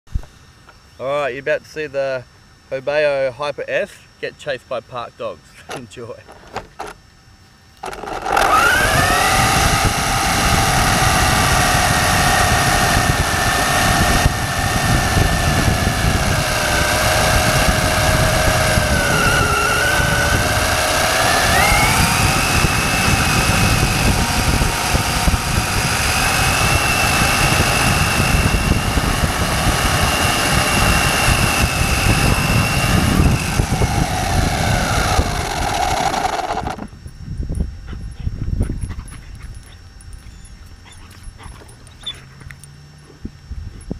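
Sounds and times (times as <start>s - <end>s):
toy truck drivetrain whine: 7.8s - 37.0s.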